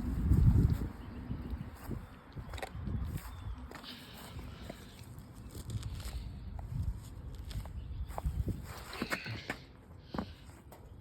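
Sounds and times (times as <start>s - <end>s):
rustling and scuffing: 0.0s - 10.9s.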